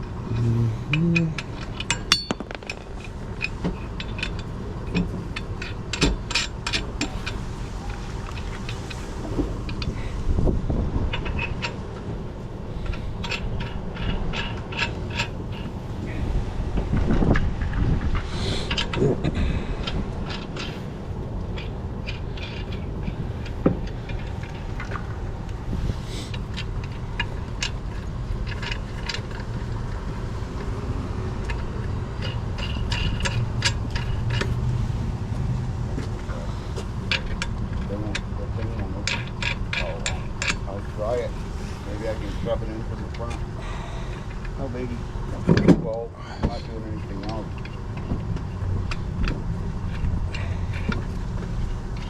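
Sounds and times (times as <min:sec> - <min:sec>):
wind rumble on microphone: 0:00.0 - 0:52.0
metal tools clinking: 0:00.3 - 0:07.4.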